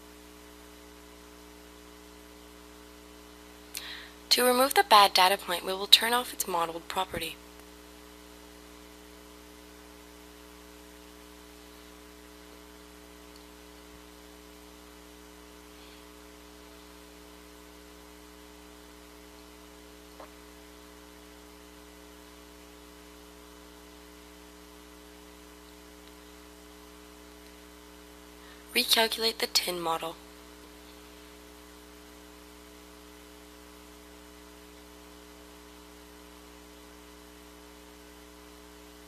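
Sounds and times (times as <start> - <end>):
electrical hum with hiss: 0.0 - 39.0
faint click: 13.3 - 13.5.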